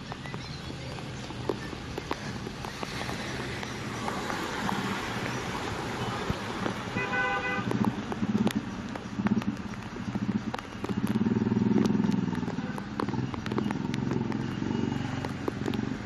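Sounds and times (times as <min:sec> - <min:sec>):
road traffic: 0:00.0 - 0:16.0
vehicle horn honking: 0:06.9 - 0:07.8, 0:12.5 - 0:12.9.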